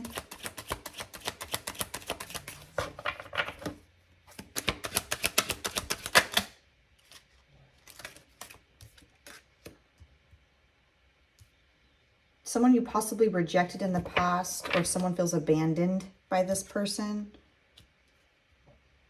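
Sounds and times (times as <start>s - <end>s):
cards being shuffled: 0.0s - 9.8s.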